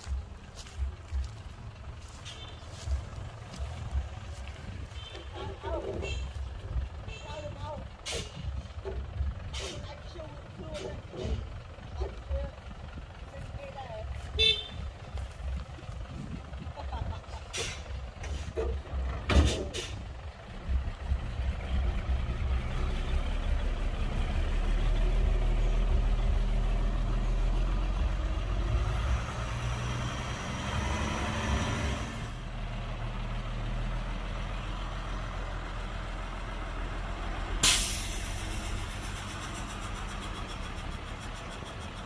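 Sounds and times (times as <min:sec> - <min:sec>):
diesel truck engine running: 0:00.0 - 0:42.0
air brakes hissing: 0:08.0 - 0:08.4, 0:17.5 - 0:18.6, 0:19.3 - 0:20.1, 0:37.6 - 0:41.4.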